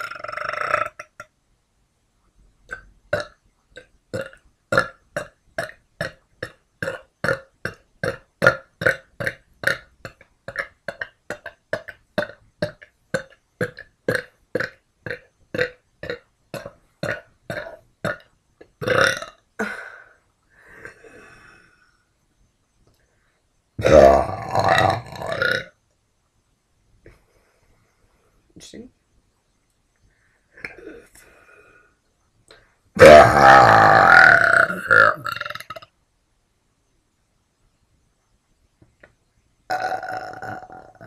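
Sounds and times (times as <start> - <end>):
person burping: 0.0 - 1.4, 2.7 - 21.5, 23.8 - 25.8, 30.6 - 31.1, 33.0 - 35.9, 39.7 - 41.0.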